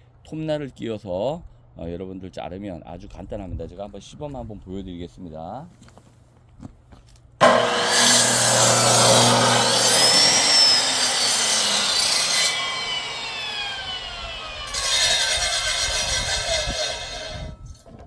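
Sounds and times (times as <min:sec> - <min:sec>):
saw blade cutting wood: 0:07.4 - 0:17.6.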